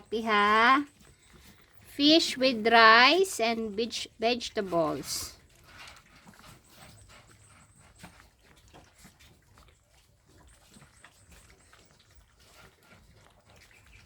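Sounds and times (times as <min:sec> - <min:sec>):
dogs eating: 0:00.0 - 0:14.0.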